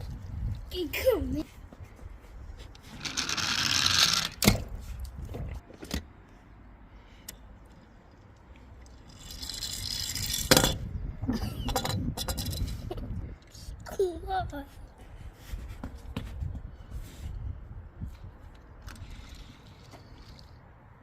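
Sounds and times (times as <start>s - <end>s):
plastic toy cars rattling: 2.8s - 4.5s, 9.0s - 10.8s.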